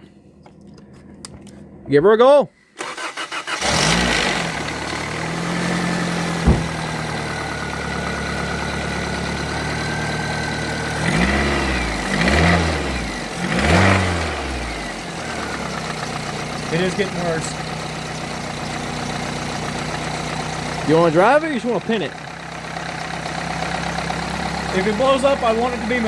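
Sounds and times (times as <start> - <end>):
car engine idling and revving: 2.9 - 26.0
engine rod knock: 6.4 - 7.1.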